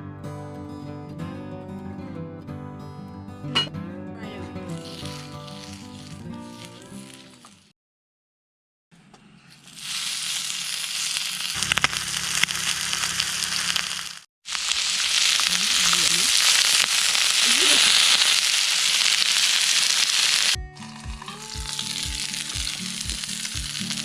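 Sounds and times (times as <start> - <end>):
meat sizzling in a pan: 4.8 - 7.7, 9.6 - 24.0.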